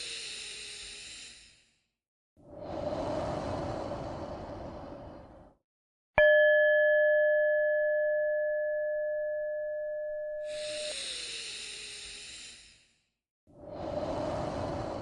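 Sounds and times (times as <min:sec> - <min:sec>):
long breath: 0:00.0 - 0:01.6, 0:02.4 - 0:05.6, 0:10.4 - 0:12.9, 0:13.6 - 0:15.0.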